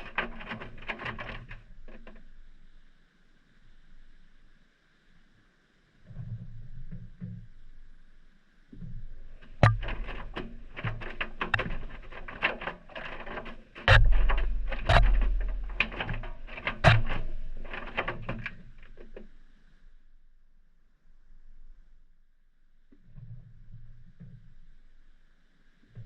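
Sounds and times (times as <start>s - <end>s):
knocks and clicks of tumbling wash: 0.0s - 2.3s, 8.9s - 19.3s
washing machine drum turning: 9.4s - 19.2s.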